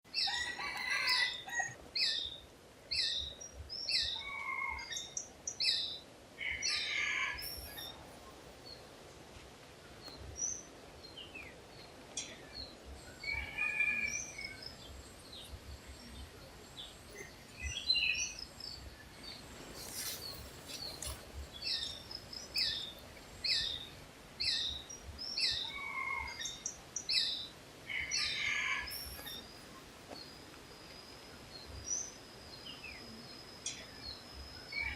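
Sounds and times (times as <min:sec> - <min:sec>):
faint background hiss: 0:00.1 - 0:34.9
birds calling: 0:10.0 - 0:30.4.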